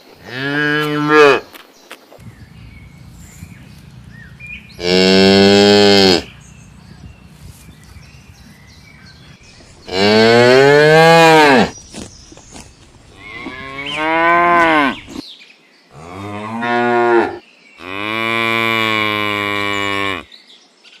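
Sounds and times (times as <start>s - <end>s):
cow mooing: 2.2s - 11.7s, 13.2s - 15.2s, 16.0s - 20.3s.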